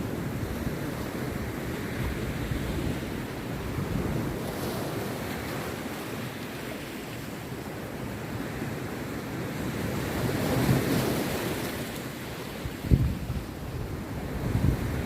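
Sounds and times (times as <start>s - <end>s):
sea waves breaking on beach: 0.0s - 15.0s
wind on microphone: 12.6s - 15.0s.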